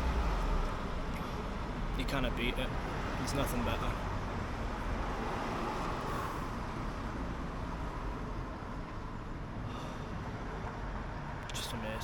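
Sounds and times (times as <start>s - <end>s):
low traffic rumble: 0.0s - 12.0s.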